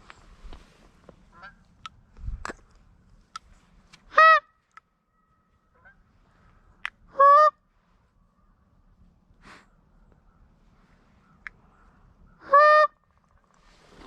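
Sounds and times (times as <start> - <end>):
goose honking: 4.1 - 4.5, 7.1 - 7.6, 12.4 - 13.0.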